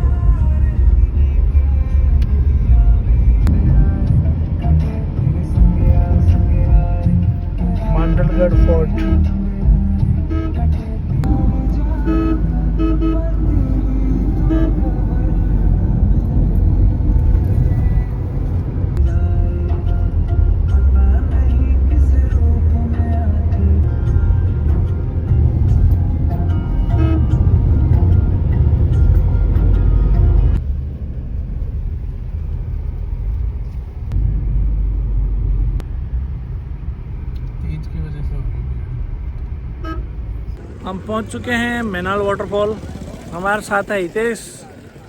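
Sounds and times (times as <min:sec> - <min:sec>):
car road rumble: 0:00.0 - 0:45.0
car horn toot: 0:07.9 - 0:09.4, 0:10.2 - 0:10.8, 0:11.8 - 0:15.4, 0:25.8 - 0:28.3, 0:39.8 - 0:40.5.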